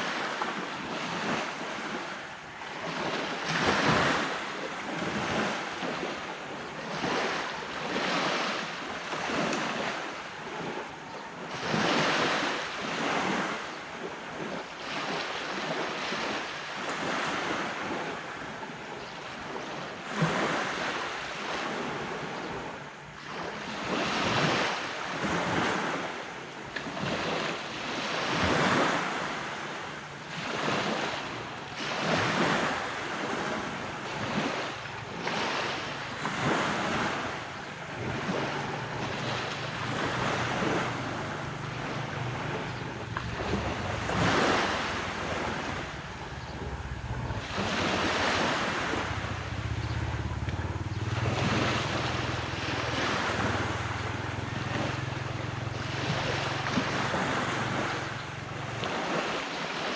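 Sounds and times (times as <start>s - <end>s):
ocean waves breaking on beach: 0.0s - 59.9s
wind buffeting microphone: 30.3s - 59.3s.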